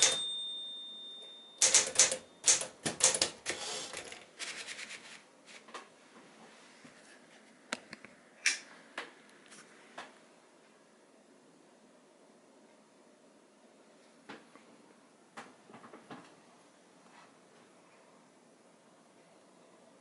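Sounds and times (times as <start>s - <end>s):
typewriter keys clacking: 0.0s - 0.3s, 1.6s - 5.0s
typewriter bell ringing: 0.0s - 4.2s.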